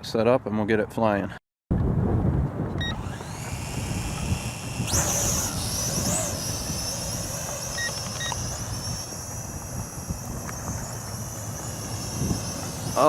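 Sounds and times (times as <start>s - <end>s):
wind buffeting microphone: 1.7s - 13.0s
drone motors whining: 2.8s - 13.0s
short electronic beeps: 7.6s - 8.7s.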